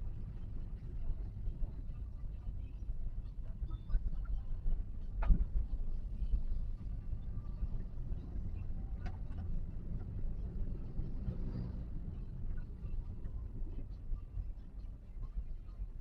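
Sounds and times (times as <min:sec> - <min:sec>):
car cabin engine and road rumble: 0:00.0 - 0:16.0.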